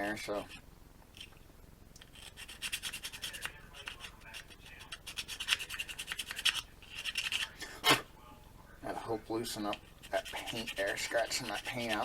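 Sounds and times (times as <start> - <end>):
needle file rasping on plastic: 2.0 - 7.5, 9.7 - 12.0.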